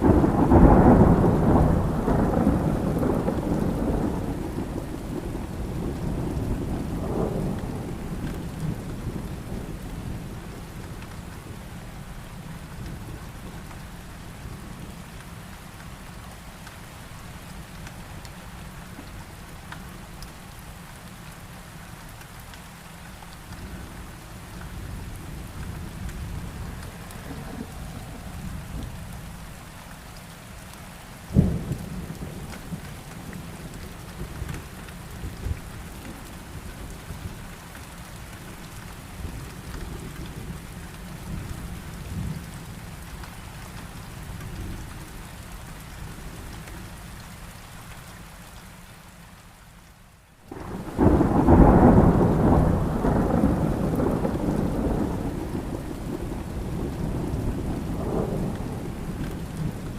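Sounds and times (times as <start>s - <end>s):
sharp thunderclap: 0.0s - 8.0s, 50.5s - 59.9s
thunder rumble: 0.0s - 11.9s, 24.9s - 29.6s, 50.5s - 59.9s
heavy rain: 0.0s - 59.9s.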